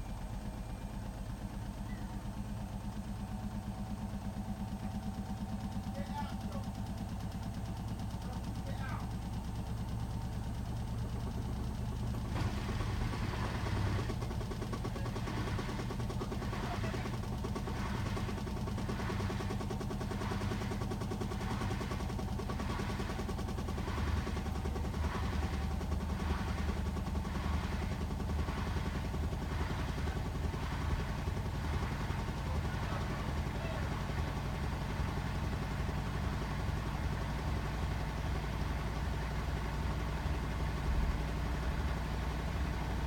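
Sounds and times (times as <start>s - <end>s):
washing machine motor hum: 9.3s - 38.8s.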